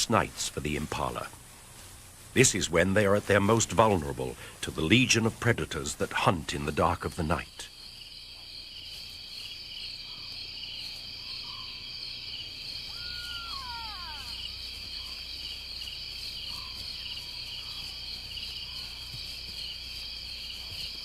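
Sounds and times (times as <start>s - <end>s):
insects trilling: 0.0s - 21.0s
falling call: 12.8s - 15.2s
faint short calls: 12.8s - 15.6s.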